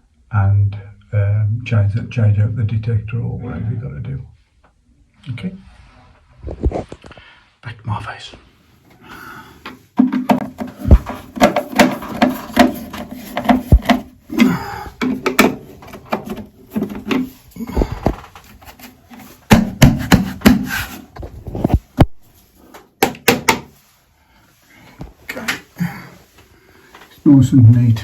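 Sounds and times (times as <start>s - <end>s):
close handling knocks and clicks: 9.6s - 14.2s, 15.0s - 20.7s, 22.7s - 23.8s.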